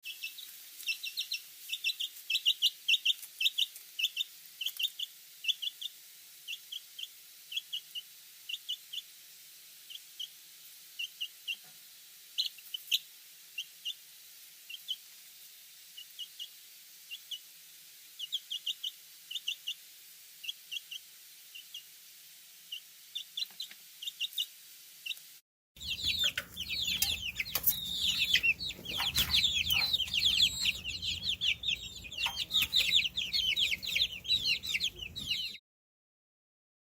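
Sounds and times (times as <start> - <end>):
baby chicks peeping: 0.1 - 9.1, 18.2 - 19.8, 23.1 - 25.2, 25.8 - 35.6.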